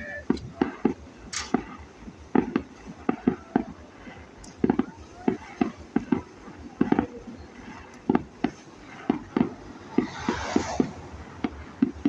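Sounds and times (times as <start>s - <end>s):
distant fireworks bangs: 0.0s - 12.0s
hissing crackle: 0.0s - 12.0s.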